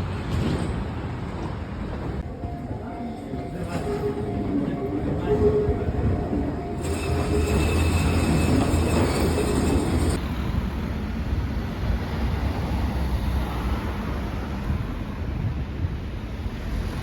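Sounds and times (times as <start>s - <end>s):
train wheels rumbling on rails: 0.0s - 13.0s
high wheel squeal: 3.8s - 10.2s.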